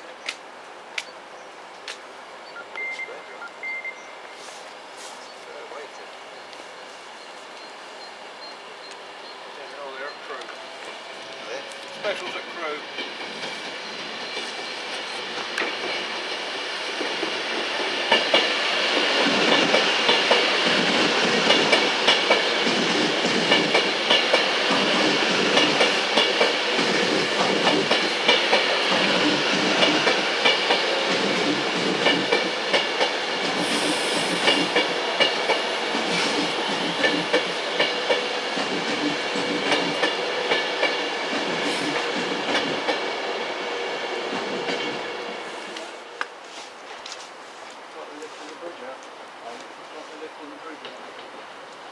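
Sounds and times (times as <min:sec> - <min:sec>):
train wheels clicking over rail joints: 0:10.3 - 0:43.2, 0:44.3 - 0:46.3.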